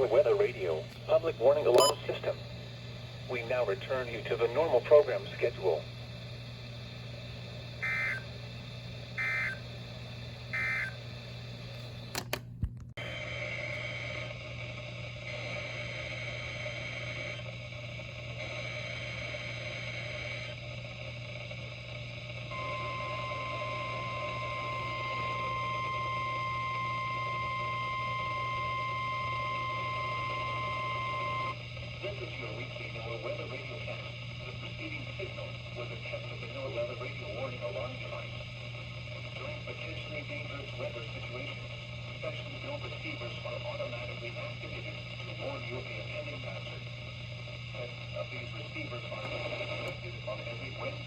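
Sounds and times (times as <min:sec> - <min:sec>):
steady warning alarm tone: 0:00.0 - 0:12.2, 0:22.4 - 0:36.6
low hum: 0:00.0 - 0:51.0
click: 0:01.7 - 0:01.9, 0:11.7 - 0:12.9
two-tone data chirps: 0:01.8 - 0:02.1, 0:07.8 - 0:08.3, 0:09.2 - 0:09.6, 0:10.5 - 0:11.0
bursts of header data: 0:07.8 - 0:08.4, 0:09.2 - 0:09.8, 0:10.5 - 0:11.1.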